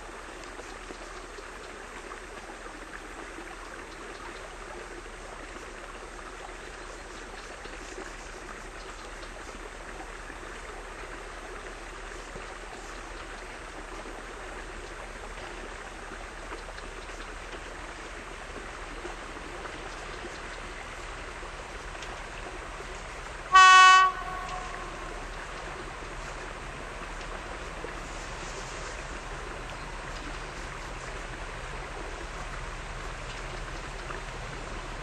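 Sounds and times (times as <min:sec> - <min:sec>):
steady background hiss: 0:00.0 - 0:35.0
locomotive horn blast: 0:23.5 - 0:25.4.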